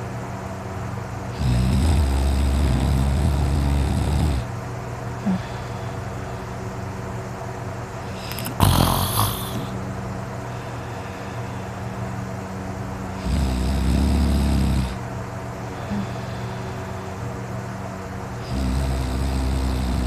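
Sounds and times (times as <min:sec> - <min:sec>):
man snoring: 0:01.3 - 0:04.5, 0:05.2 - 0:05.8, 0:08.1 - 0:09.8, 0:13.1 - 0:15.0, 0:15.8 - 0:17.0, 0:18.4 - 0:20.0.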